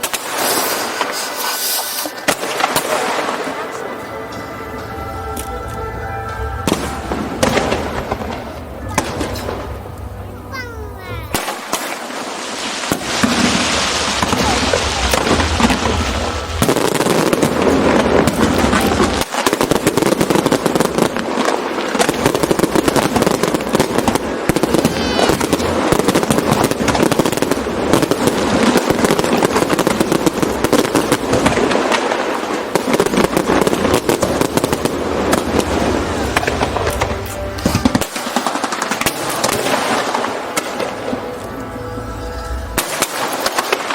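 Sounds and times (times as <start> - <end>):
firework rising whistle: 0.0 - 9.8, 12.3 - 21.1, 24.5 - 29.2
fireworks crackling and banging: 0.0 - 43.9.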